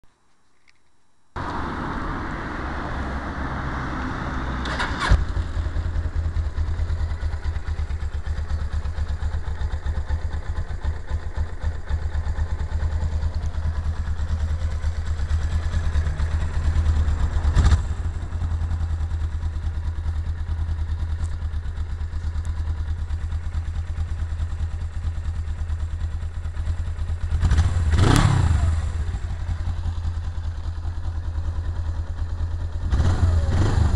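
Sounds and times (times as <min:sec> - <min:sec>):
motorcycle engine idling and revving: 0:01.4 - 0:33.9.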